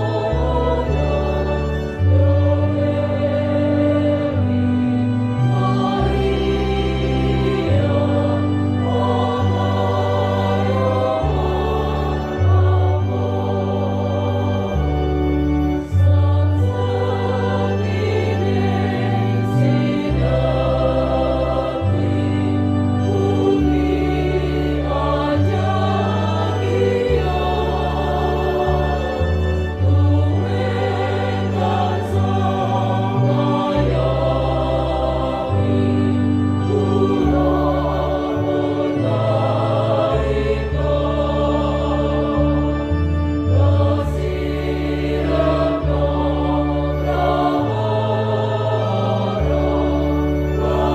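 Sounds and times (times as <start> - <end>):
church choir singing: 0.0 - 50.9
low held bass notes: 0.0 - 50.9.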